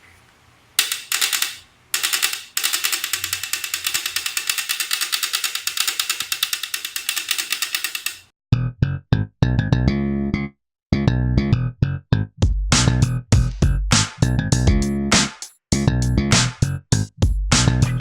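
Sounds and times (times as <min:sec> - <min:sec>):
music: 0:08.6 - 0:18.0.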